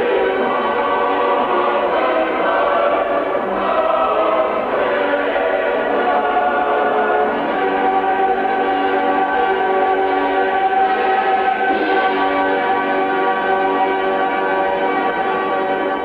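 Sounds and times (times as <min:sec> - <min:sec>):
choir singing sustained chords: 0:00.0 - 0:16.0.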